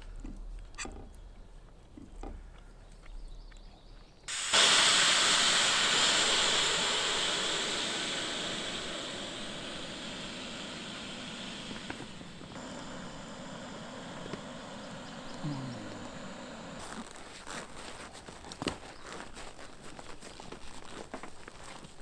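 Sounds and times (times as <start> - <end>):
loud hiss: 4.3 - 18.3.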